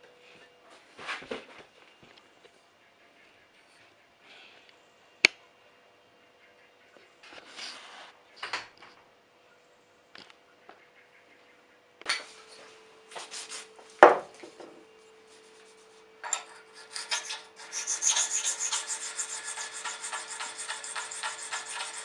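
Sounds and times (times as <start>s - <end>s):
scrapes: 7.3s - 8.2s, 15.3s - 22.0s
faint steady hum: 8.2s - 22.0s
abrasive rubbing on steel: 15.3s - 22.0s.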